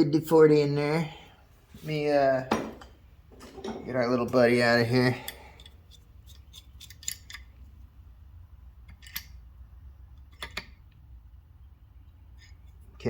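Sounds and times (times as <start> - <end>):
low steady hum: 0.0 - 13.0
hand tools clinking: 5.1 - 7.5.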